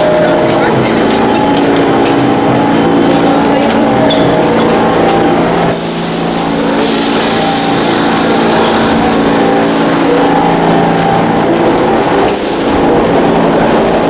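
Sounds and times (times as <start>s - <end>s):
loud steady hum with rushing: 0.0s - 14.0s
subway train running: 0.0s - 14.0s.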